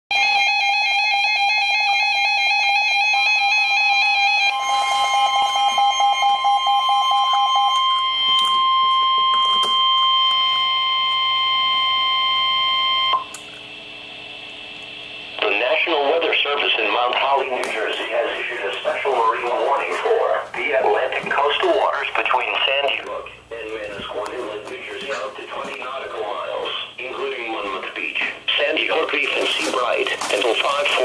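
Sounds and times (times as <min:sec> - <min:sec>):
steady warning alarm tone: 0:00.1 - 0:31.0
warbling digital data tones: 0:03.7 - 0:13.8.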